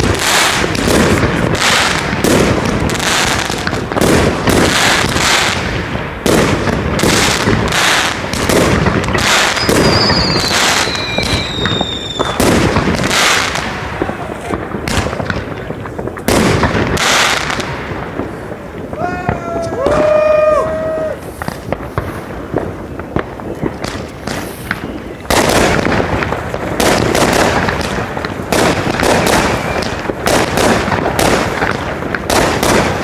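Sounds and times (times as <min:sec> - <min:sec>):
firework bangs: 0:00.0 - 0:33.0
firework crackling: 0:00.0 - 0:33.0
high whistle gliding down: 0:09.5 - 0:12.4.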